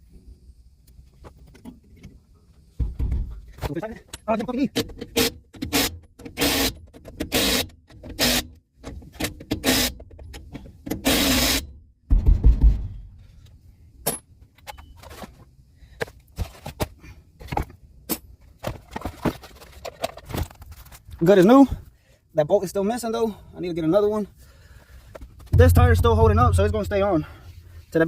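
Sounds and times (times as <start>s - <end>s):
harsh tool noises: 25.5s - 27.2s
heavy low thump: 25.5s - 27.4s.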